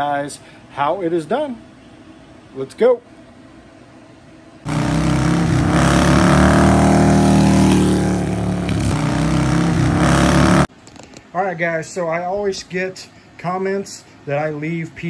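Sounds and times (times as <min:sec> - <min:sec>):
motorcycle engine revving: 0:04.7 - 0:10.7.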